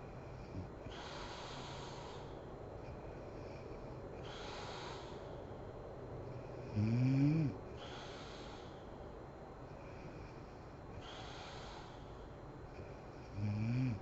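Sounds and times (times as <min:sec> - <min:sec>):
hissy breaths: 0:00.0 - 0:14.0
woman snoring: 0:06.7 - 0:07.6, 0:12.8 - 0:14.0.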